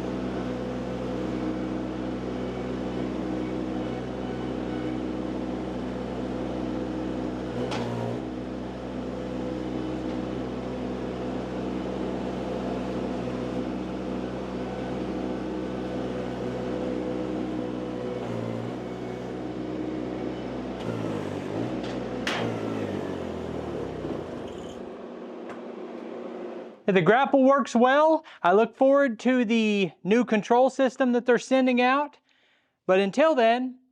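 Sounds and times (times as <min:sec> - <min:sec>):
skid steer engine running: 0:00.0 - 0:26.8.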